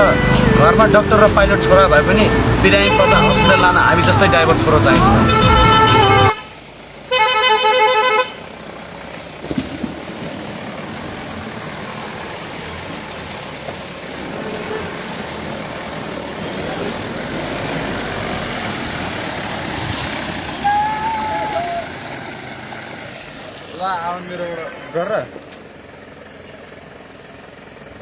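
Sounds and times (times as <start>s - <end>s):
vehicle horn pulsing tone: 0.0s - 8.5s, 20.6s - 22.0s
vehicle driving on road: 0.0s - 28.0s.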